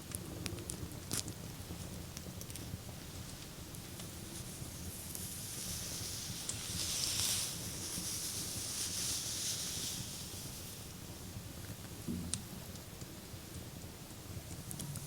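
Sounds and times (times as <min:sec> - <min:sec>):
hands rubbing on a back: 0:04.0 - 0:11.0.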